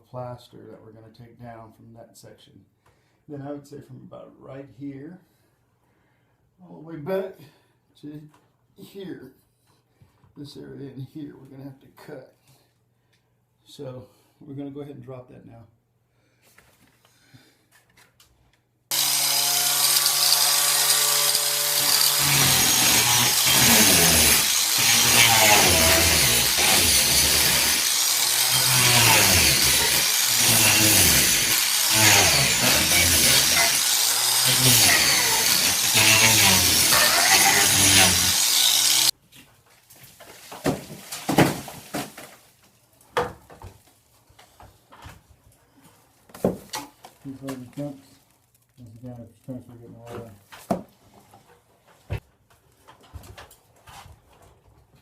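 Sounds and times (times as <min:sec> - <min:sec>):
power tool cutting plaster: 0:18.9 - 0:39.1.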